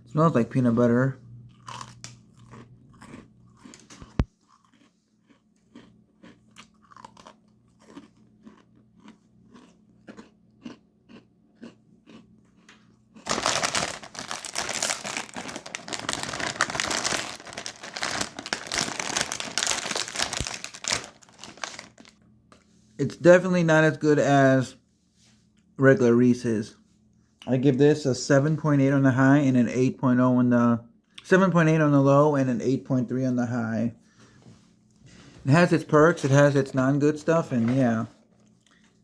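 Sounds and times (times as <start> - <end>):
cookie crunching: 1.5 - 22.2
loud continuous crackling: 13.3 - 22.0.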